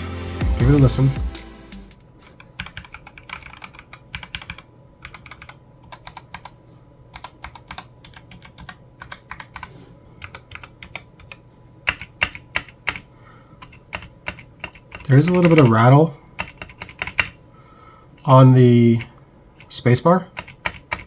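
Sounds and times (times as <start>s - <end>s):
mechanical keyboard keys clacking: 2.6s - 6.5s, 7.2s - 13.0s, 13.6s - 15.7s, 16.4s - 17.4s, 19.0s - 21.0s.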